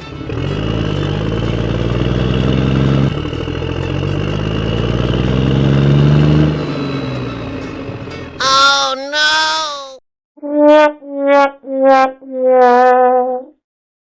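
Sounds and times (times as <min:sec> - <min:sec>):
engine accelerating: 0:00.0 - 0:08.4.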